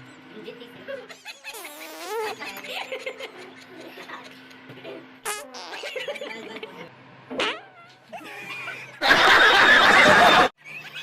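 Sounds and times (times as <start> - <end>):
fart sound effect: 1.5 - 2.4, 5.2 - 5.8, 7.3 - 7.8
people laughing and snickering: 8.1 - 11.0.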